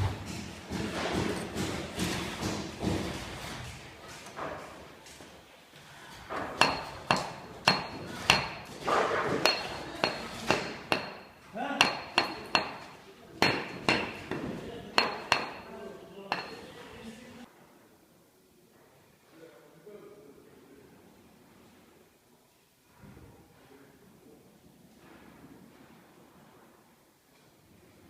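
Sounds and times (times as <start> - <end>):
hammer blows with metallic ring: 6.6 - 8.8, 9.4 - 16.7.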